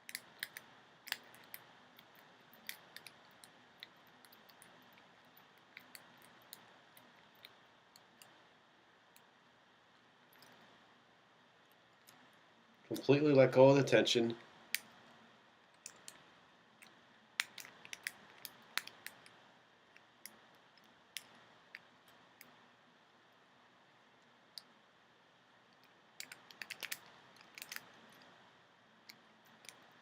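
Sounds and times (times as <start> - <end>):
lock pick clicking in padlock: 26.2 - 27.8.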